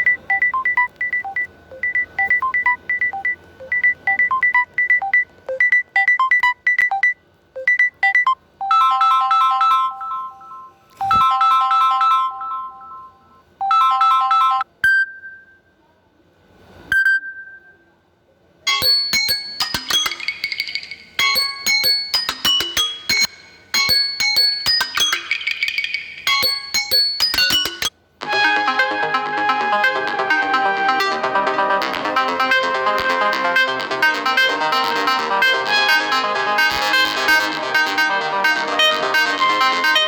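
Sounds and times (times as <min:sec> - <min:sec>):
plucked-sounding tone: 0:18.7 - 0:40.0
short chiming chords: 0:18.7 - 0:40.0.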